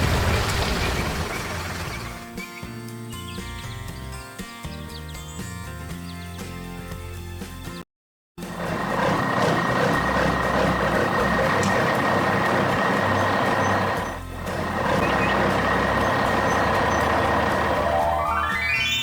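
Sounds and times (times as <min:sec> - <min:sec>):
heavy vehicle engine: 0:00.0 - 0:02.4, 0:08.4 - 0:18.7.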